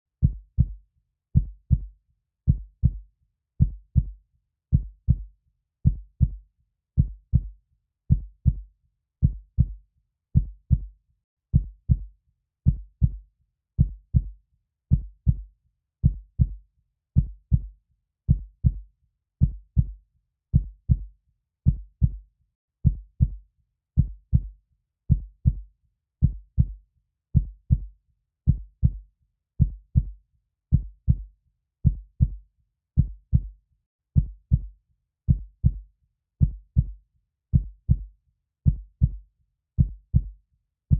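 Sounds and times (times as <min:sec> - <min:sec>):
heartbeat thumps: 0:00.2 - 0:00.8, 0:01.4 - 0:01.9, 0:02.5 - 0:03.0, 0:03.6 - 0:04.1, 0:04.7 - 0:05.2, 0:05.8 - 0:06.4, 0:07.0 - 0:07.5, 0:08.1 - 0:08.6, 0:09.2 - 0:09.8, 0:10.4 - 0:10.9, 0:11.6 - 0:12.0, 0:12.7 - 0:13.2, 0:13.8 - 0:14.3, 0:14.9 - 0:16.6, 0:17.2 - 0:17.7, 0:18.3 - 0:18.8, 0:19.4 - 0:19.9, 0:20.6 - 0:21.1, 0:21.7 - 0:22.2, 0:22.8 - 0:23.4, 0:24.0 - 0:24.5, 0:25.1 - 0:25.6, 0:26.2 - 0:26.8, 0:27.4 - 0:27.9, 0:28.5 - 0:29.0, 0:29.6 - 0:32.4, 0:33.0 - 0:33.5, 0:34.2 - 0:34.7, 0:35.3 - 0:35.8, 0:36.4 - 0:38.1, 0:38.7 - 0:39.2, 0:39.8 - 0:40.4.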